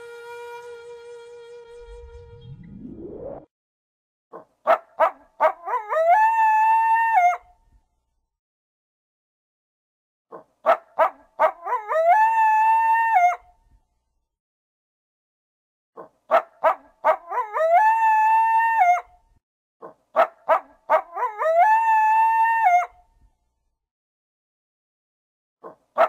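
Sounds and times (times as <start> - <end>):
coyote yipping and howling: 4.7 - 7.5, 10.6 - 13.5, 16.3 - 19.1, 20.2 - 23.0.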